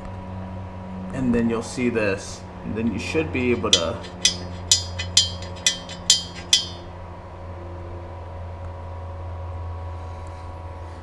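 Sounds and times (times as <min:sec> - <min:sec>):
metal parts clinking: 0:03.6 - 0:06.8.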